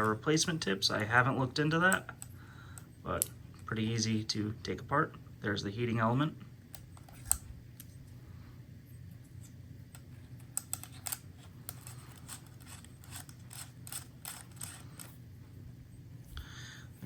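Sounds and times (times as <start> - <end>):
steady low hum: 0.0 - 17.0
clicks and scrapes of parts: 6.8 - 8.1, 9.2 - 15.2.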